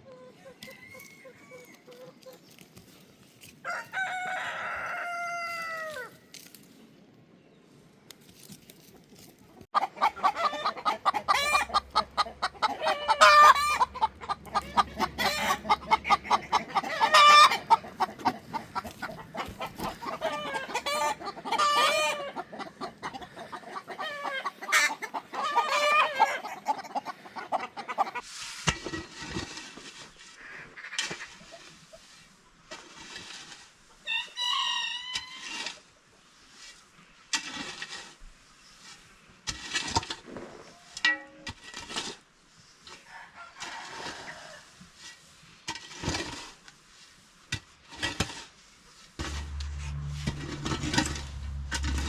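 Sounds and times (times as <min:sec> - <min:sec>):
chickens clucking: 0:00.0 - 0:02.6, 0:09.6 - 0:28.3, 0:49.2 - 0:52.0
rooster crowing: 0:00.6 - 0:01.9, 0:03.6 - 0:06.1.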